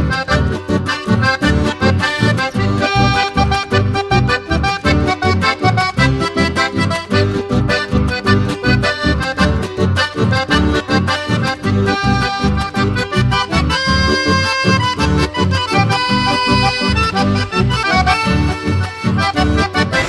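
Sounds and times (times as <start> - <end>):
accordion music: 14.5 - 20.0
steady bass beat: 15.4 - 19.4.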